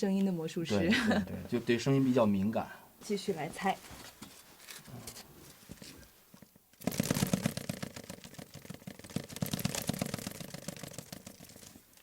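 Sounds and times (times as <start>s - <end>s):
bird wings flapping: 6.8s - 11.8s.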